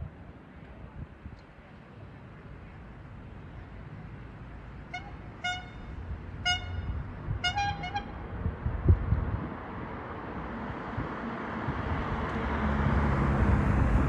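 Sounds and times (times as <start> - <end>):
horn tooting: 4.9 - 8.2.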